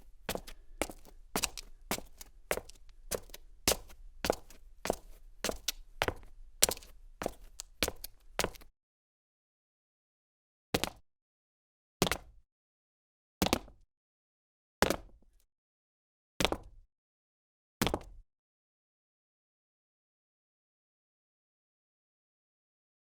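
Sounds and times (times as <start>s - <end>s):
footsteps: 0.0s - 8.7s.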